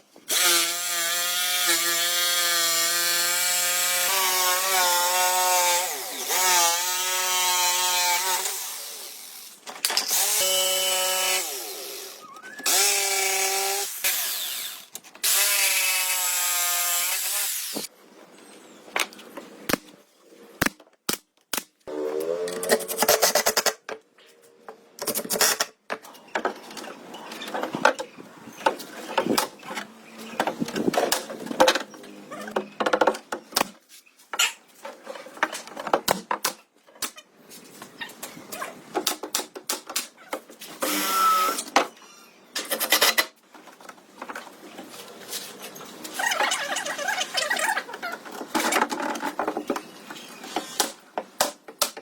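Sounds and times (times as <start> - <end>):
high-pitched squeak: 12.2 - 12.7.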